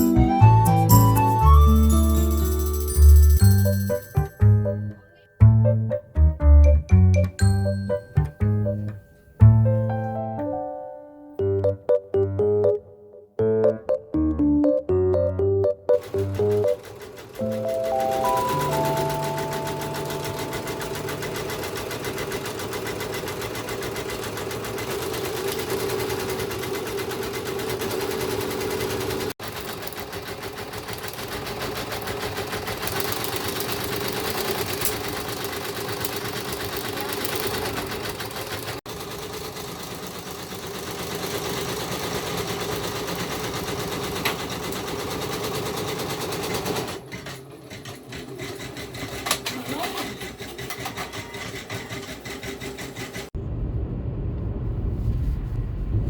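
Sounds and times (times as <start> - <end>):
sewing machine stitching: 16.0 - 53.4.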